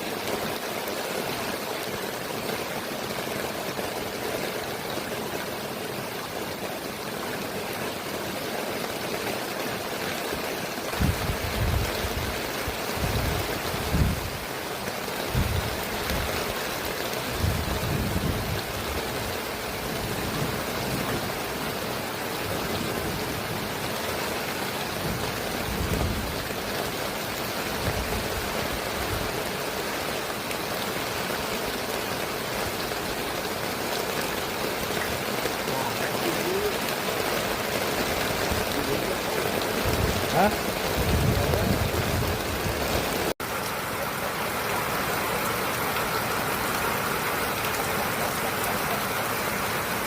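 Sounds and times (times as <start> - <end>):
heavy rain: 0.0 - 50.0
strong wind gusts: 11.0 - 14.4, 15.3 - 16.3, 17.4 - 18.9, 39.8 - 43.1.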